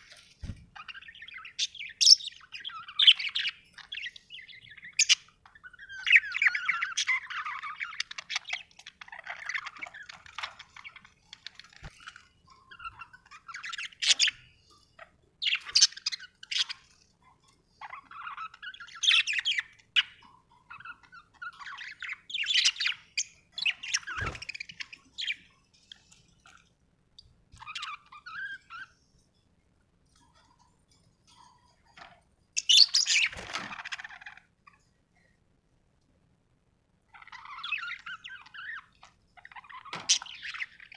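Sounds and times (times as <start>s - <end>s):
budgerigars chirping: 0.8s - 26.1s, 27.6s - 28.9s, 32.6s - 34.5s, 37.1s - 40.9s.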